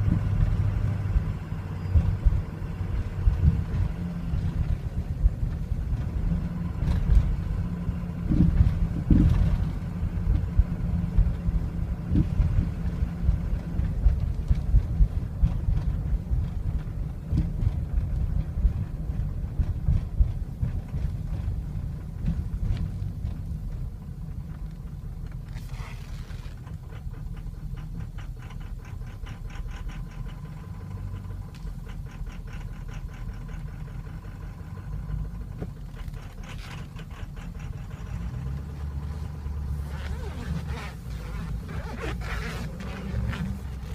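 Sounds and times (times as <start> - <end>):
diesel engine idling roughly: 0.0 - 43.9
fine rapid engine ticking: 0.0 - 43.9.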